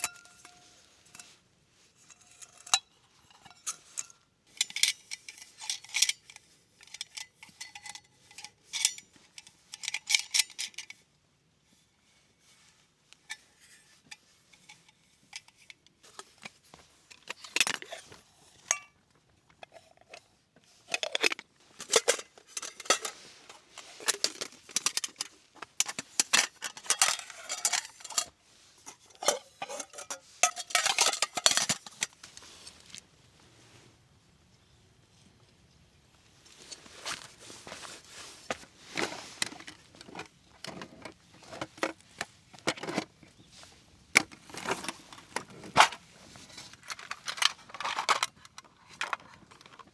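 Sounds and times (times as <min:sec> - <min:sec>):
metal cookware clinking: 0:00.0 - 0:01.3, 0:21.8 - 0:23.3, 0:25.9 - 0:28.3, 0:28.9 - 0:32.1.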